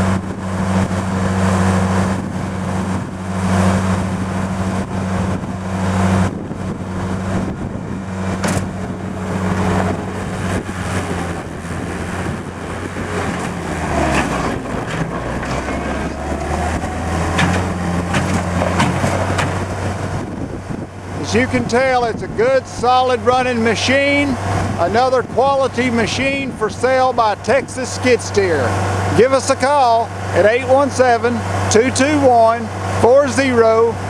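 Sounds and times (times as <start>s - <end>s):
loader diesel engine running: 0.0s - 34.0s
sharp knocks: 8.3s - 15.9s, 16.5s - 20.0s.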